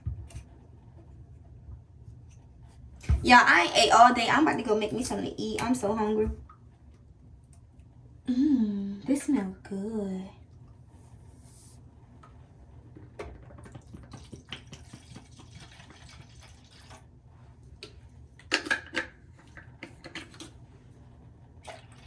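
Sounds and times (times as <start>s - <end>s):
water running: 13.1s - 17.2s.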